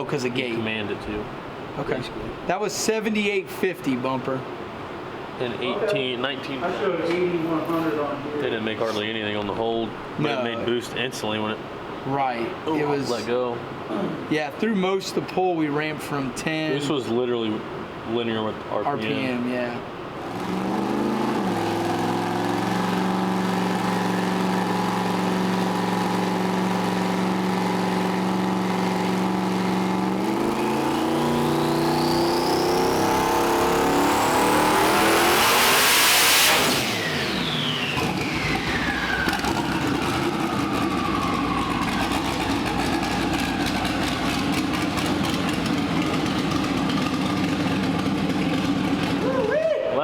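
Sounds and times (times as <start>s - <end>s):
engine revving on dyno: 20.2s - 49.2s
turbo whine: 20.4s - 44.2s.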